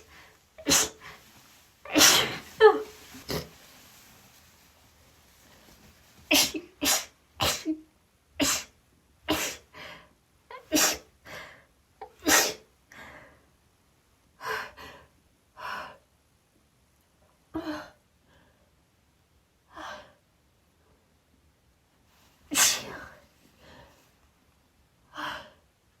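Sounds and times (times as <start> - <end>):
woman sneezing: 0.6 - 1.0, 1.9 - 3.0, 12.2 - 12.6, 22.5 - 23.2.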